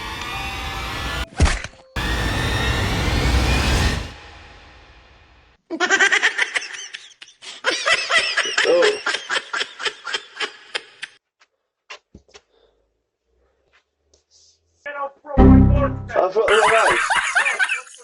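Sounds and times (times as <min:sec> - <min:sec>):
person laughing hard: 0:07.6 - 0:10.5.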